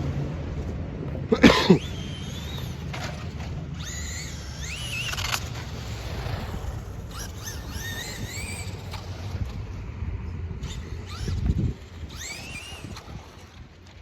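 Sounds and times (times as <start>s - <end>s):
electric motor whining: 1.0s - 14.0s.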